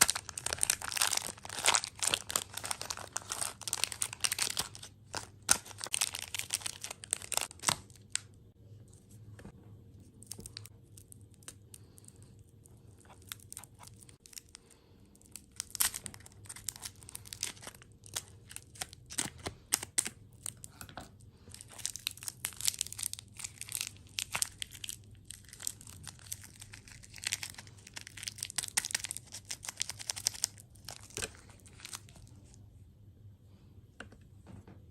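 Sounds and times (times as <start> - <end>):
packaging crinkling and tearing: 0.0 - 8.4, 10.2 - 32.6.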